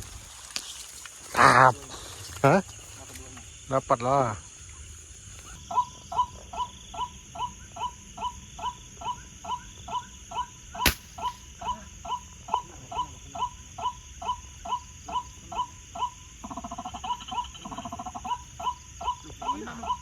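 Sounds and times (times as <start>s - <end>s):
rhythmic animal calls: 5.5s - 20.0s
sharp crack: 10.8s - 11.6s.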